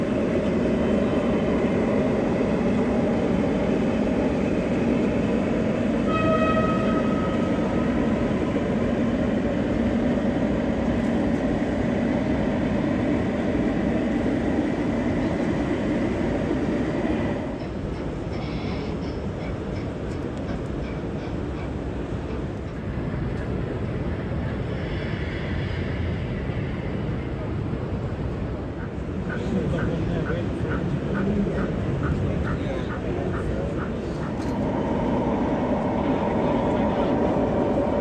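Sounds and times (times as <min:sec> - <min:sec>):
model train rumbling: 0:00.0 - 0:38.0
model train horn: 0:06.0 - 0:07.7.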